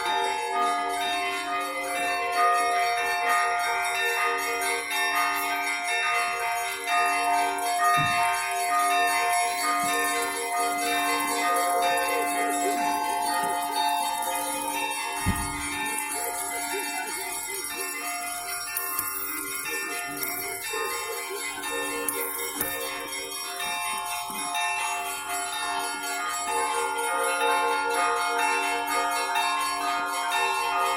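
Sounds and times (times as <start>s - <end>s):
church bells pealing: 0.0s - 30.9s.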